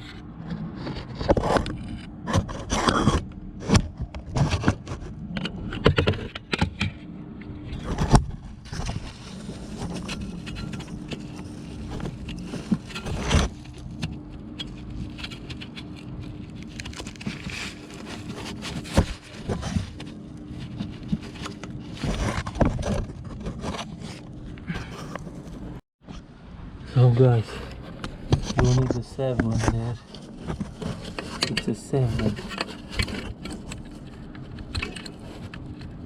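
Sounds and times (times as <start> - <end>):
faint steady hum: 0.0 - 36.0
engine parts being handled: 7.6 - 25.8, 27.2 - 36.0.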